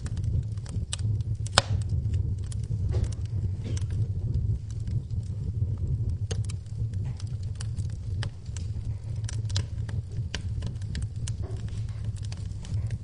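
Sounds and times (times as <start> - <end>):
low rumble of flames: 0.0 - 13.0
wood fire crackling and popping: 0.0 - 13.0.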